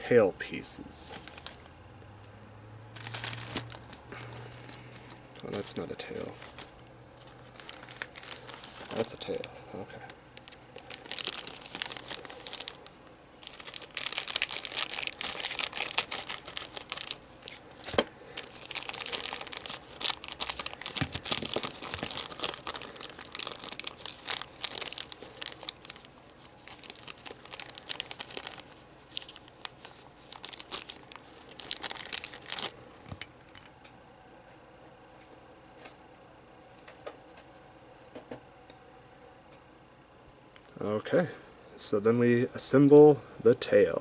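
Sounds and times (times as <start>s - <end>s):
plastic crinkling and crackling: 1.0s - 1.7s, 2.9s - 33.7s.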